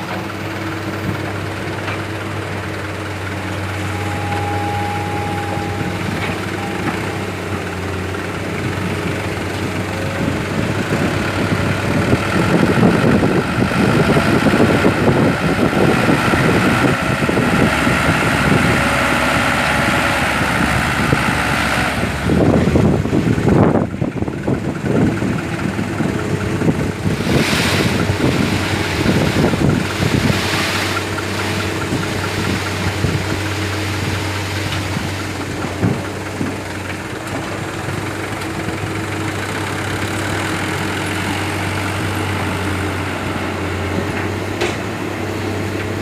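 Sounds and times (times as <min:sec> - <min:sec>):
diesel engine running: 0:00.0 - 0:46.0
high whine: 0:03.3 - 0:10.5.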